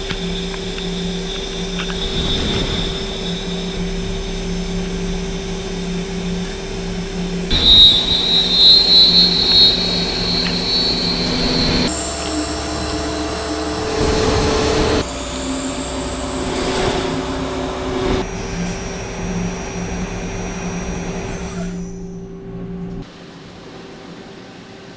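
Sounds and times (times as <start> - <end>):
machine whining tones: 0.0 - 23.0
lathe cutting metal: 7.5 - 18.3.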